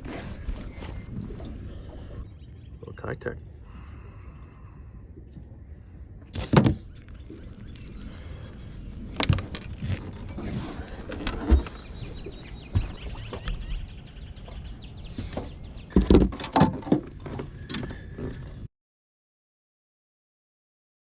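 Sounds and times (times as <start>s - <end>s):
knocks and thumps on a boat: 6.3s - 7.1s, 9.1s - 18.6s.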